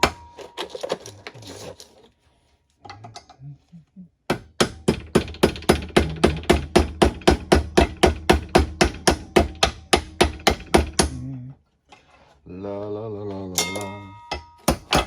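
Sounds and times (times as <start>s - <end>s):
hammer striking metal: 0.0s - 0.7s, 4.3s - 11.2s, 13.6s - 15.0s.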